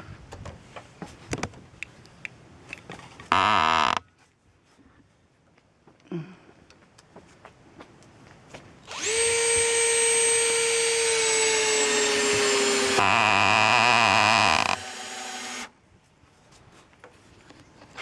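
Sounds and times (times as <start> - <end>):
power drill whining: 8.9 - 15.7.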